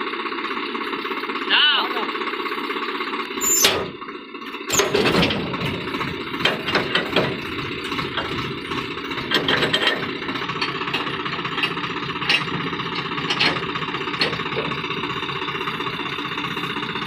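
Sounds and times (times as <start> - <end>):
excavator diesel engine under load: 0.0 - 17.0
metallic clanks and rattles: 3.4 - 17.0.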